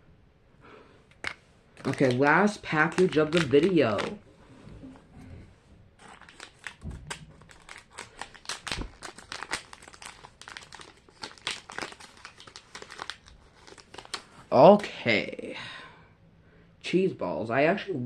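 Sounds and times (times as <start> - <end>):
plastic packet crinkling: 1.2 - 4.2, 6.0 - 14.4.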